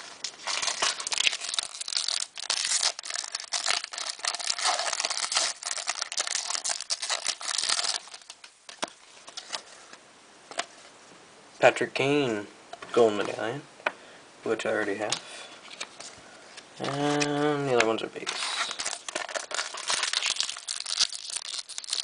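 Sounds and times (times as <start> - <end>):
card pack wrapper tearing: 0.2 - 8.4, 18.2 - 22.0.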